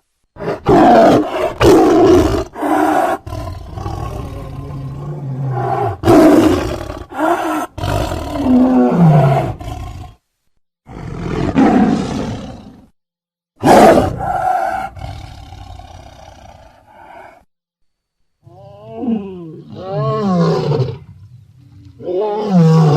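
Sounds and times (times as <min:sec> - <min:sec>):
big cat roaring: 0:00.4 - 0:10.2, 0:10.9 - 0:12.9, 0:13.6 - 0:17.4, 0:18.4 - 0:22.9
big cat snarling: 0:13.6 - 0:17.5.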